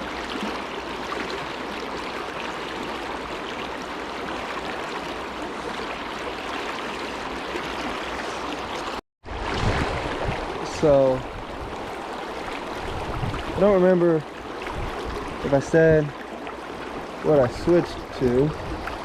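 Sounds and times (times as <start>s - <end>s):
fast-flowing river current: 0.0s - 19.0s.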